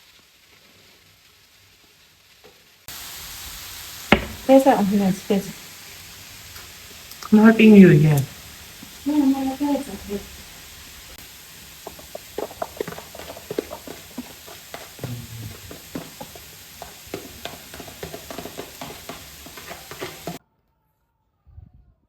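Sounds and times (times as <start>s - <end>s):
food sizzling: 0.0s - 20.4s
utensil scraping a pan: 8.0s - 20.4s.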